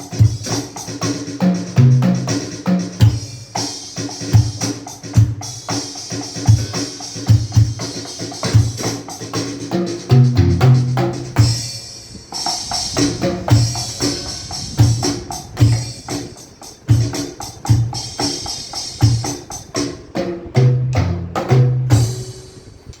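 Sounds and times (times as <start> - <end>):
kick drum: 0.0 - 0.6, 3.0 - 3.4, 5.2 - 5.6, 7.3 - 8.8, 14.8 - 16.0
snare drum: 0.0 - 22.6
cymbals: 0.0 - 23.0.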